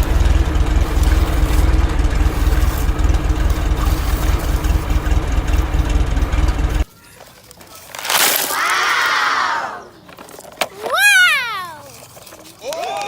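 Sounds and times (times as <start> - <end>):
heavy engine idling: 0.0 - 6.9.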